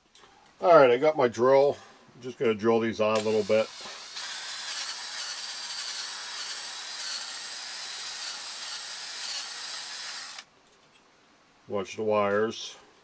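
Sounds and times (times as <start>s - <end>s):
electric drill whining: 3.2s - 10.5s.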